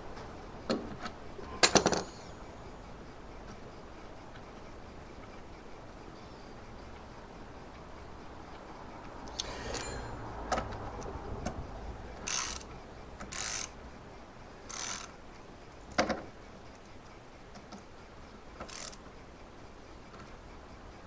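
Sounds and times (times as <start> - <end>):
metal tool clicks: 1.6 - 2.4
ratchet spanner ratcheting: 1.6 - 2.5, 12.2 - 13.8, 14.7 - 15.1, 18.6 - 19.1.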